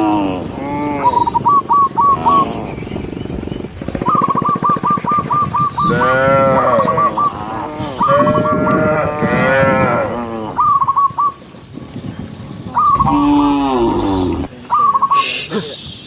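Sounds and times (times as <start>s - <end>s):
cattle mooing: 0.0s - 1.4s, 5.8s - 10.6s, 13.0s - 14.5s
high chirping: 12.8s - 15.4s.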